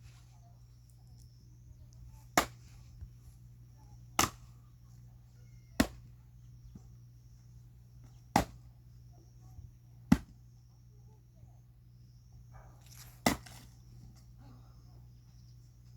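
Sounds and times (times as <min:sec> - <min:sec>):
axe splitting wood: 0:04.2 - 0:04.4, 0:08.3 - 0:08.6, 0:12.9 - 0:13.7.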